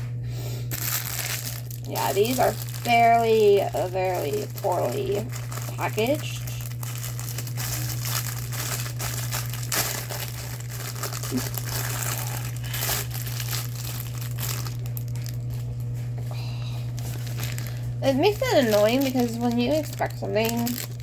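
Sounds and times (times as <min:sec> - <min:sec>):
plastic bags crinkling: 0:00.7 - 0:21.0.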